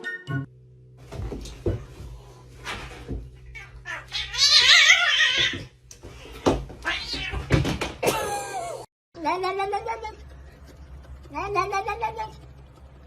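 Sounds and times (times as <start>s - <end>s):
knocks and thumps: 1.0s - 3.7s, 5.2s - 8.2s
cat yowling: 3.4s - 5.6s.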